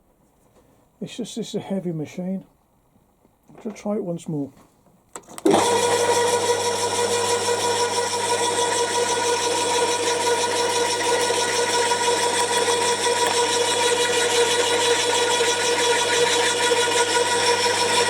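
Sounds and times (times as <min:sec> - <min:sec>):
garden shredder motor humming: 0:05.4 - 0:18.0.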